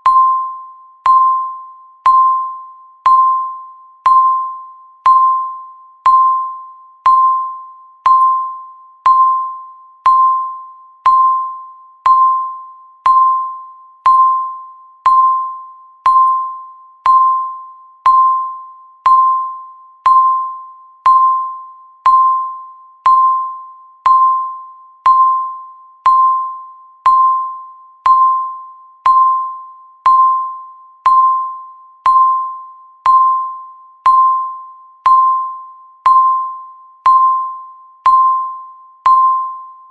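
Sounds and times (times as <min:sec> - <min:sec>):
electronic timer tick: 0:00.0 - 0:39.8.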